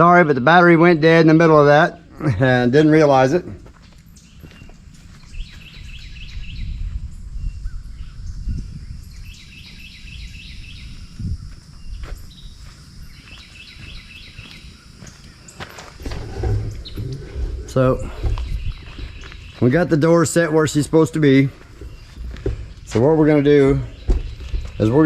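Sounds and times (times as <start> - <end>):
songbird chirping: 0.0 - 25.0
low rumble: 16.0 - 19.6
short knocks: 21.8 - 25.0.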